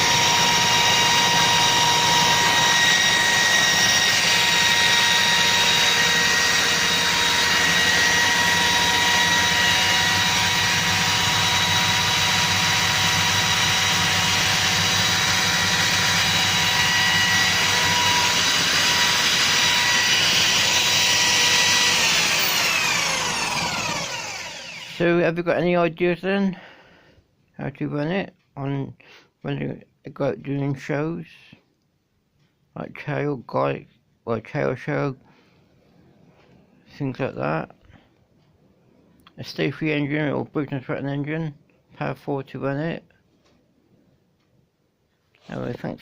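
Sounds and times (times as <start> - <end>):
wheel grinder whining: 0.0 - 25.1.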